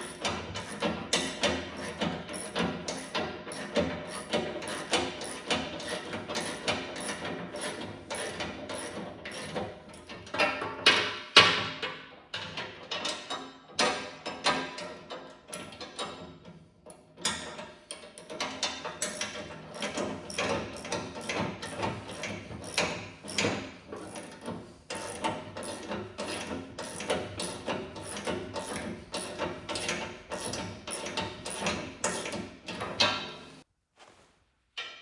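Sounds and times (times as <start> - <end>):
ratchet wrench clicking: 0.0 - 10.1, 19.0 - 32.4.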